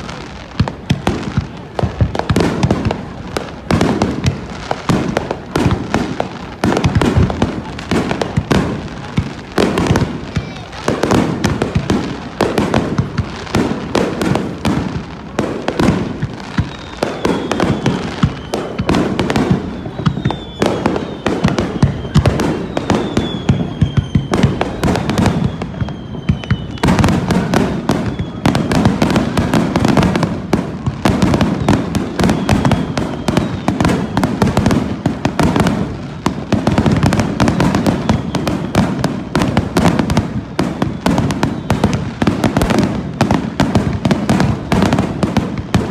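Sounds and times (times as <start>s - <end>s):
fireworks bursting: 0.0s - 45.9s
faint falling whistles: 16.4s - 29.4s, 31.3s - 34.4s, 37.4s - 39.1s, 40.5s - 42.1s.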